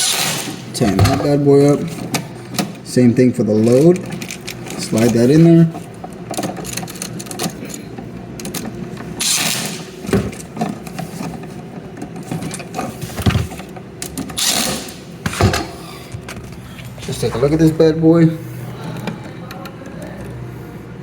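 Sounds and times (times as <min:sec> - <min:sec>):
handling knocks: 0:13.0 - 0:13.7.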